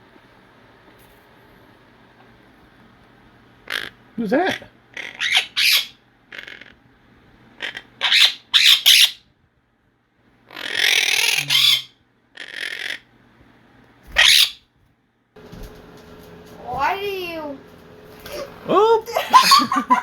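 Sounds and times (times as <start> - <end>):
parrots squawking: 3.6 - 6.8, 7.6 - 9.3, 10.5 - 13.1, 14.1 - 14.6, 19.2 - 20.0
parrot harsh screech: 3.7 - 6.8, 7.6 - 9.2, 10.5 - 13.0, 14.1 - 14.6.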